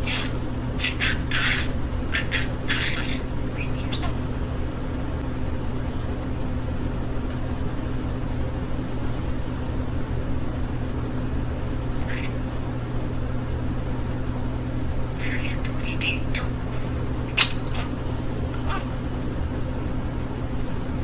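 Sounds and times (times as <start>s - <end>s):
budgie chirps: 0.0s - 4.2s, 15.2s - 19.0s
low background hum: 0.0s - 21.0s.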